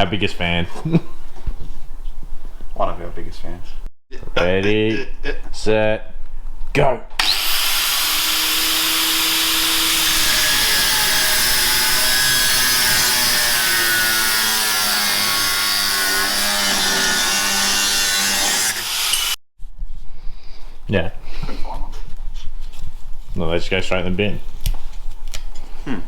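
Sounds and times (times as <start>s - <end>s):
power tool grinding sheet steel: 7.2s - 19.4s.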